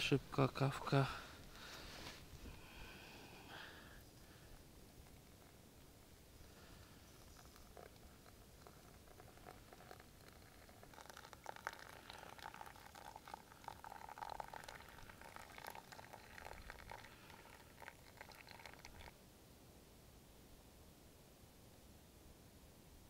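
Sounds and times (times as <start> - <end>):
water bubbling to the boil: 6.6 - 19.1.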